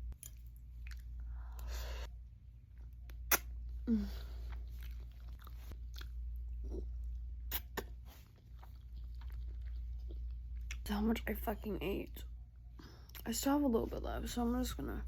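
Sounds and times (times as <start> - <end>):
steady low hum: 0.0 - 15.0
person chewing noodles: 0.1 - 2.0, 2.7 - 10.8
wet mouth clicks: 3.1 - 3.5, 7.5 - 8.0.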